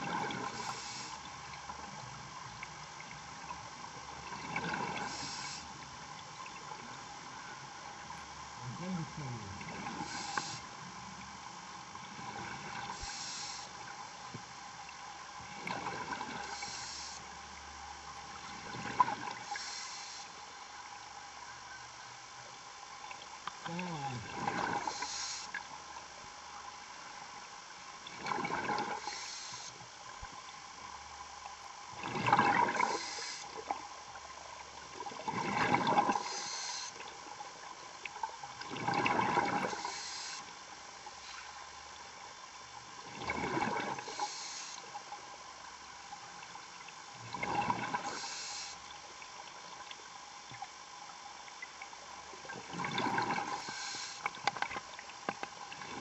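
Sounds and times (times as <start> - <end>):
diver breathing through regulator: 0.5 - 1.2, 5.0 - 5.7, 9.9 - 10.7, 12.9 - 13.8, 16.4 - 17.2, 19.5 - 20.4, 23.8 - 25.6, 29.0 - 29.7, 36.1 - 37.0, 39.6 - 40.5, 44.0 - 44.8, 48.0 - 48.8, 53.4 - 54.3.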